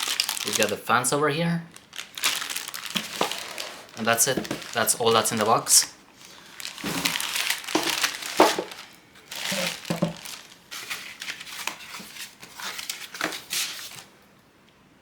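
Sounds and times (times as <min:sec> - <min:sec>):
packaging crinkling: 0:00.0 - 0:00.9, 0:01.7 - 0:14.1.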